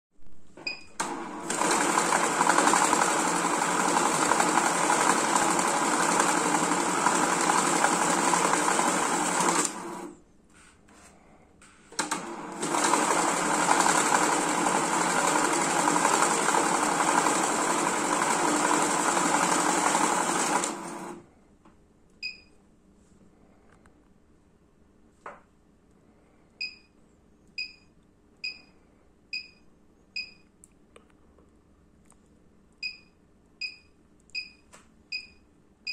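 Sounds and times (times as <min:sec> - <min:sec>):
banknote counting machine whirring: 0:01.0 - 0:10.1, 0:12.0 - 0:21.2.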